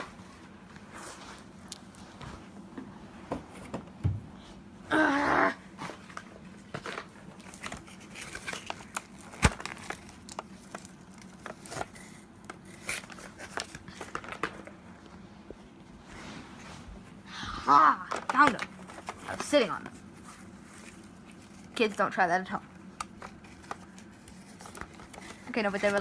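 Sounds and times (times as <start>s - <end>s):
packaging crinkling and rustling: 5.8s - 15.2s, 18.1s - 22.0s, 22.7s - 26.0s.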